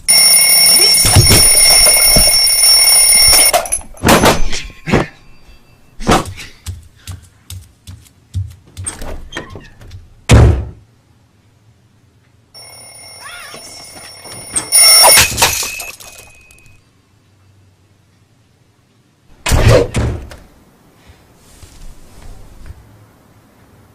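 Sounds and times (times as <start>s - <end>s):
alarm clock ringing: 0.0s - 4.4s, 12.6s - 16.8s
cartoon knocks and thuds: 7.5s - 10.8s
loud thump: 10.3s - 10.8s.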